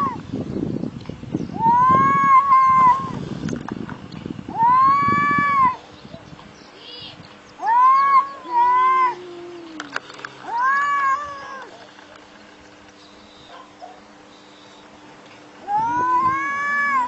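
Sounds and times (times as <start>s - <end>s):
cats yowling: 0.0s - 0.2s, 1.6s - 3.2s, 4.5s - 5.8s, 7.6s - 11.9s, 15.6s - 17.0s.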